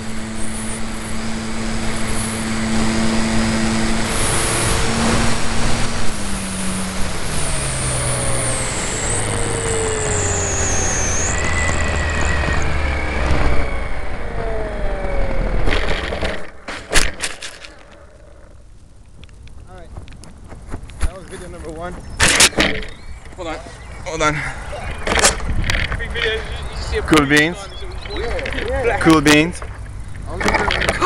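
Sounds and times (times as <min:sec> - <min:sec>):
high whine sliding down: 0:00.0 - 0:31.0
motor noise: 0:00.0 - 0:31.0
sharp clicks: 0:19.0 - 0:21.0.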